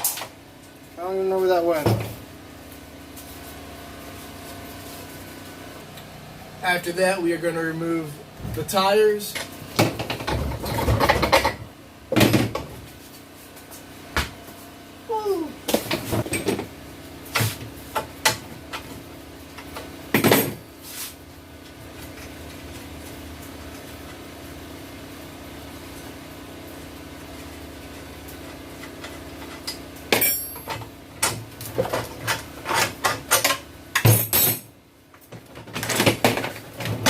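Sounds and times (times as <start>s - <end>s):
metal tools clinking and knocking: 29.5s - 30.9s.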